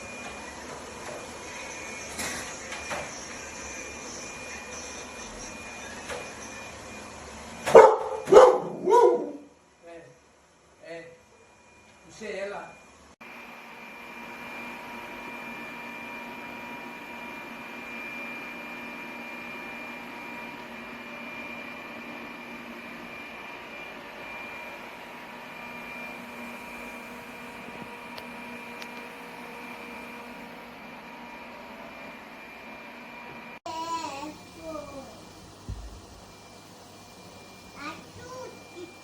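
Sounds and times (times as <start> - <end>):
thin high whine: 0.0 - 8.4, 17.0 - 39.0
robot vacuum whirring: 33.8 - 39.0.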